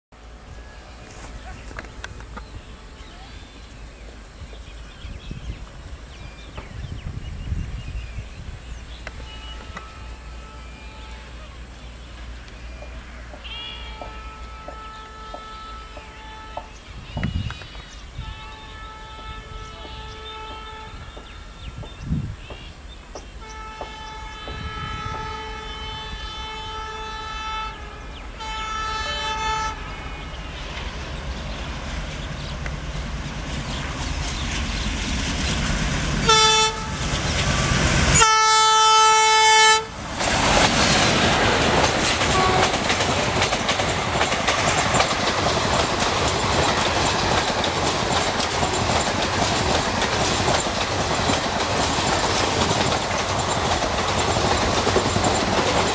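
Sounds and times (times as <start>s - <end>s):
train roaring past: 0.1s - 55.9s
locomotive horn blasts: 9.0s - 11.7s, 12.8s - 17.4s, 18.2s - 21.8s, 23.4s - 30.5s, 36.2s - 40.0s, 42.2s - 43.5s
wheels clattering over rail joints: 40.1s - 55.9s.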